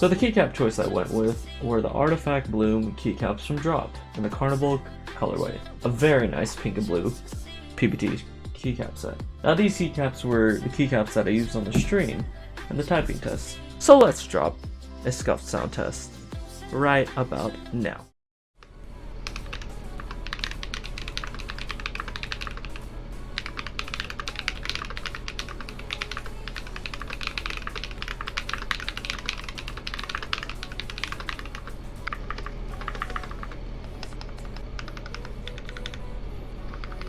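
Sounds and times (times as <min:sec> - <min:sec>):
low steady hum: 0:18.6 - 0:37.0
mechanical keyboard keystroke clacks: 0:19.2 - 0:37.0.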